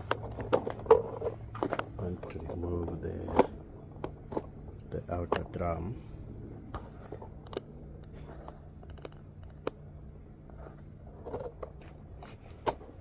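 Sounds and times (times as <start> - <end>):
clicks and knocks of parts handled: 0.0 - 5.8, 6.6 - 9.8, 11.1 - 13.0
steady low hum: 0.0 - 13.0.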